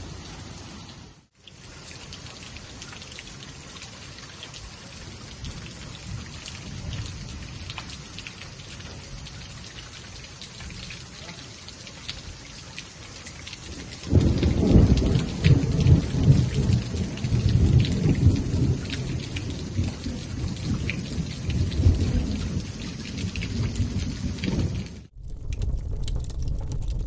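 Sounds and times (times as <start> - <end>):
raindrops striking close by: 0.0 - 27.0
steady rain: 0.0 - 27.0
low rumble of thunder: 5.4 - 8.0, 13.8 - 27.0.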